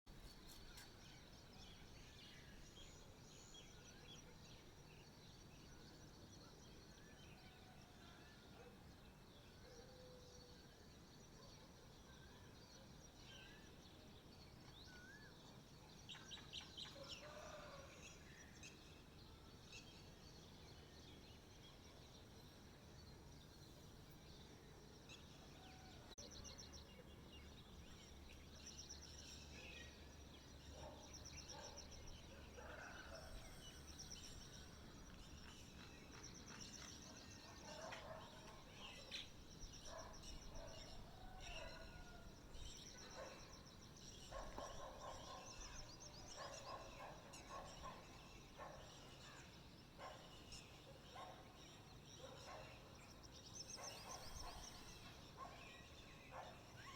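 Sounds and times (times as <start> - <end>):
songbirds chirping and trilling: 0.1 - 56.9.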